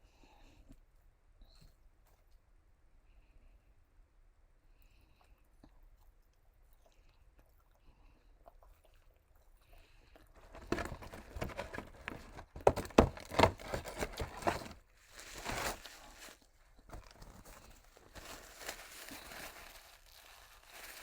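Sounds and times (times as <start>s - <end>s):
paper packaging crinkling: 10.4s - 21.0s.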